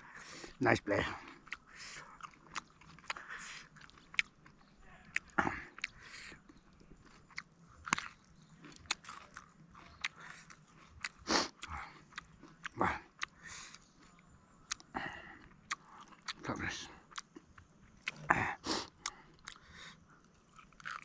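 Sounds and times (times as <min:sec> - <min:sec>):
wet mouth clicks from chewing: 0:01.3 - 0:16.4, 0:17.1 - 0:21.0
food crunches: 0:07.0 - 0:14.9, 0:20.3 - 0:21.0.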